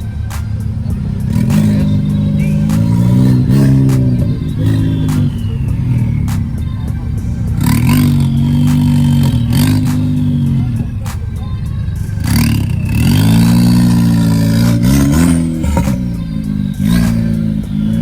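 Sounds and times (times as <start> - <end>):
car engine revving: 0.0 - 18.0
high turbo whistle: 0.0 - 18.0
sharp short cracks: 0.2 - 18.0.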